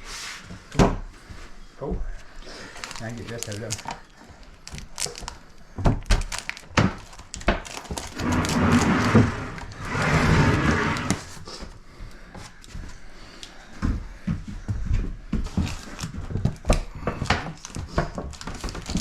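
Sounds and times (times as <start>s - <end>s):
rough scraping: 8.1s - 11.3s.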